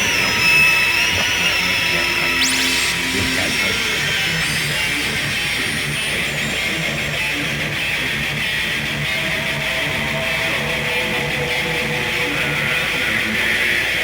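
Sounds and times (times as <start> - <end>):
harsh electronic noise music: 0.0 - 14.0
mid-pitched tone: 2.0 - 8.3.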